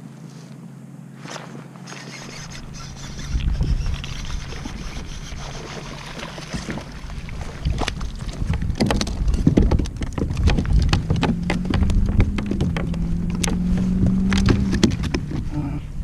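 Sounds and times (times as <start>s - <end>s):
water rumble around kayak: 0.0s - 16.0s
wind buffeting microphone: 2.1s - 16.0s
gear clicking and knocking: 7.7s - 15.5s.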